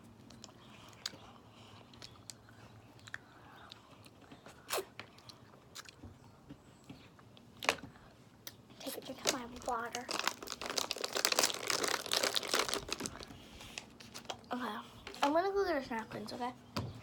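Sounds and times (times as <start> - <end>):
faint chewing and crunching: 0.0 - 15.4.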